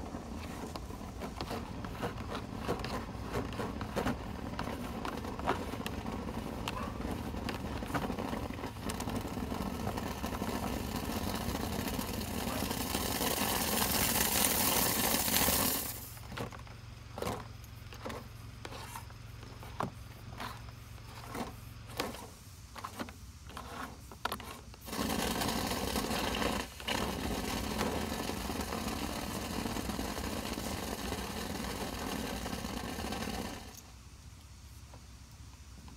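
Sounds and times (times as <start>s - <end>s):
machine motor rushing: 0.0s - 16.5s, 20.3s - 33.8s.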